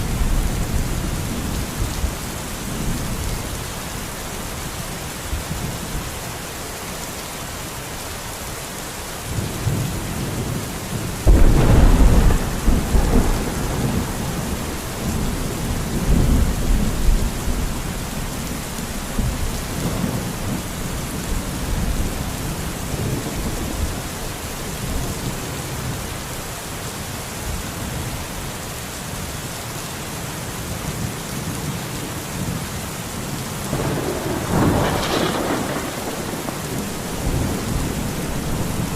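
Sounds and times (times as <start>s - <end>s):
rain hissing: 0.0s - 27.1s, 33.6s - 38.9s
thunder rumbling and clapping: 11.2s - 17.8s, 33.7s - 38.9s.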